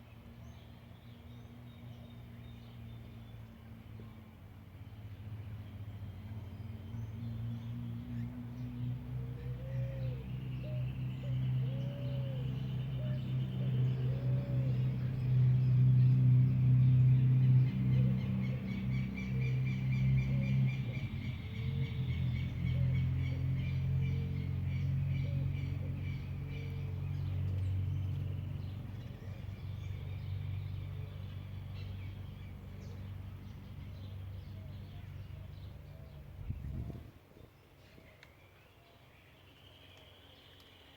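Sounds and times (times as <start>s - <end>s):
low mechanical hum: 0.0s - 40.9s
small birds chirping: 9.5s - 40.9s
dove cooing: 11.6s - 15.0s.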